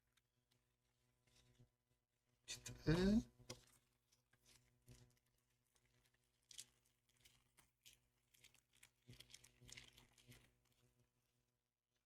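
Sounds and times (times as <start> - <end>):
cards and wrapper crinkling: 3.5 - 10.9.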